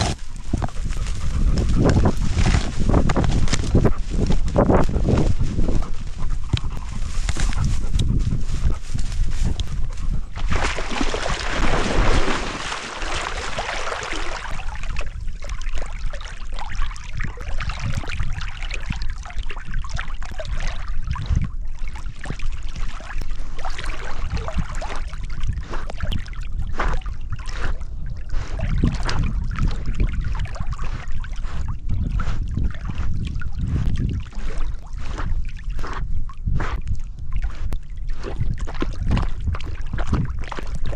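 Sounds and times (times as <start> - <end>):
low rumbling bumps: 0.0 - 13.7
water splashing and sloshing: 0.0 - 40.9.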